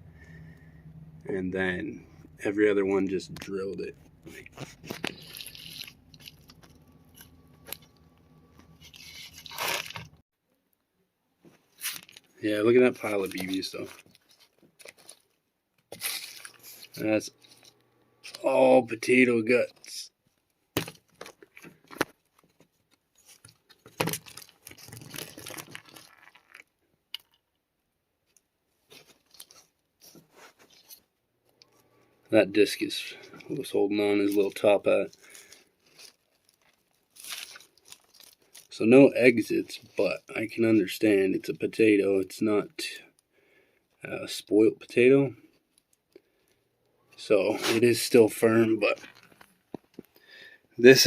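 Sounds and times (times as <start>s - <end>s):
scraping and rustling: 3.9s - 10.2s, 28.8s - 31.1s
potato crunching: 4.3s - 10.2s, 11.8s - 17.8s, 23.2s - 27.4s, 33.2s - 38.7s.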